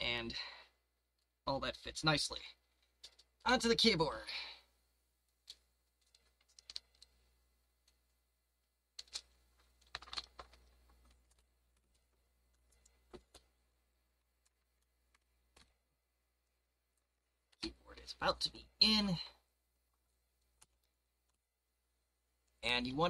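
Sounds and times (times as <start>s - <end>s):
laptop keyboard clicks and rattles: 5.4s - 7.1s, 9.0s - 13.5s.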